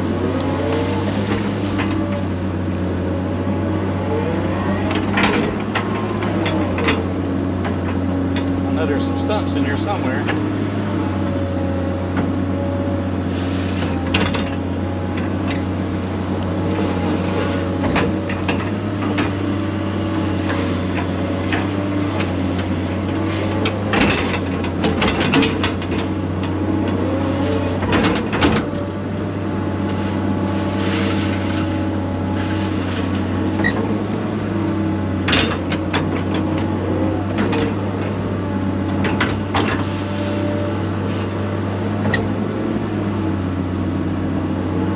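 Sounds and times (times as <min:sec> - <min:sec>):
excavator diesel engine running: 0:00.0 - 0:44.9
knocks and clatters of machine: 0:05.0 - 0:10.5, 0:16.7 - 0:28.9, 0:35.2 - 0:38.3, 0:38.9 - 0:40.6.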